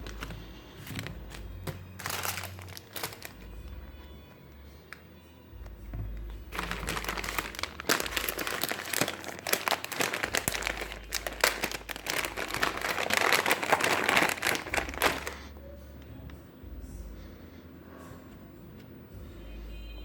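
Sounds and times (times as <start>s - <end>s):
packaging crinkling and rustling: 0.0s - 4.1s, 6.5s - 15.5s.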